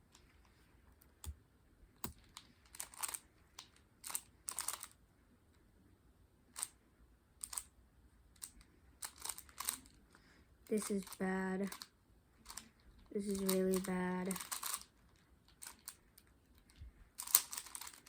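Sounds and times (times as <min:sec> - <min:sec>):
sharp plastic clicks: 0:02.0 - 0:04.9, 0:13.3 - 0:14.9, 0:15.5 - 0:18.0
small objects rattling: 0:08.4 - 0:10.0, 0:12.5 - 0:16.0, 0:16.6 - 0:18.0.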